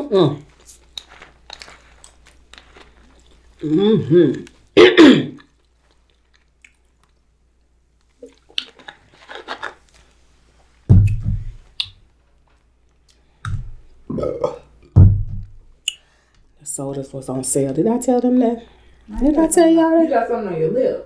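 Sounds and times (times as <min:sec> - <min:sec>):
person chewing: 0:00.4 - 0:10.2
low thuds: 0:10.9 - 0:11.6, 0:15.0 - 0:15.7.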